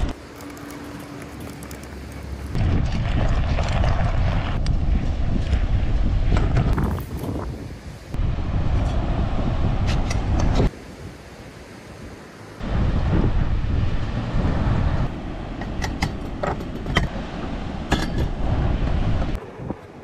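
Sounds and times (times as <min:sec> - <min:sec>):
wind buffeting microphone: 0:02.5 - 0:10.7, 0:12.6 - 0:20.0.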